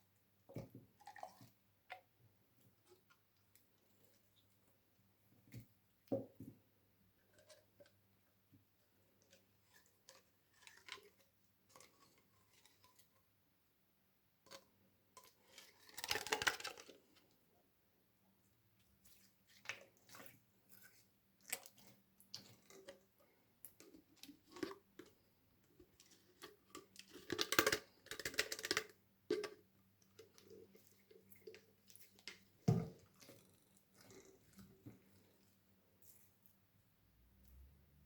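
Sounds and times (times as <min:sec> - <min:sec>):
slime squelching: 0:18.8 - 0:27.3.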